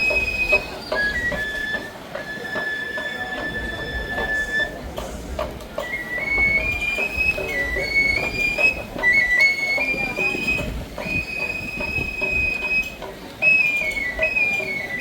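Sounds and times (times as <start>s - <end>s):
reed flute melody: 0.0s - 15.0s
wind rumble on microphone: 9.9s - 12.6s.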